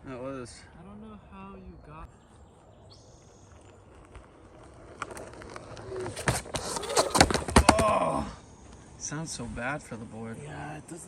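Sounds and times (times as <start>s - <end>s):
board clattering and scraping: 4.9s - 8.1s.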